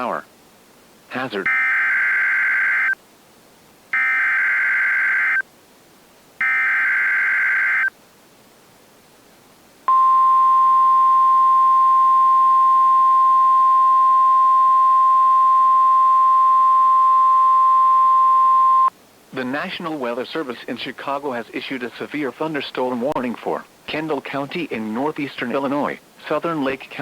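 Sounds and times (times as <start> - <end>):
loud steady attention tone: 1.1 - 3.0, 3.9 - 5.5, 6.4 - 8.0, 9.9 - 19.5.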